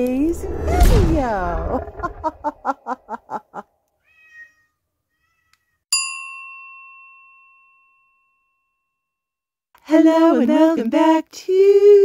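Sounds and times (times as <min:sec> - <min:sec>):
bell-like ding: 0:05.9 - 0:09.1.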